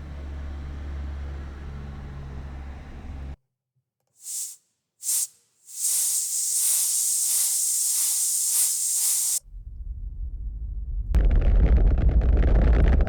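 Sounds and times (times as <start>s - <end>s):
rocket hissing: 4.2s - 9.4s.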